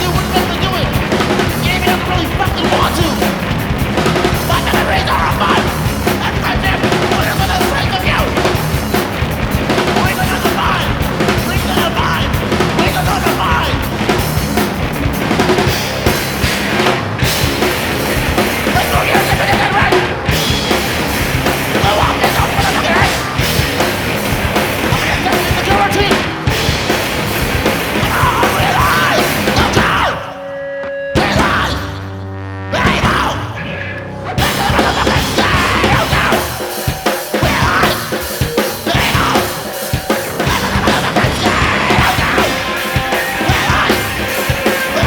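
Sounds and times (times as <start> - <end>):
person yelling vocals: 0.0 - 1.0, 1.6 - 3.3, 4.2 - 8.6, 9.9 - 13.9, 18.7 - 20.3, 21.8 - 23.6, 24.8 - 26.4, 28.0 - 45.0
pounding drums: 0.0 - 30.3, 34.4 - 45.0
distorted guitars: 0.0 - 45.0.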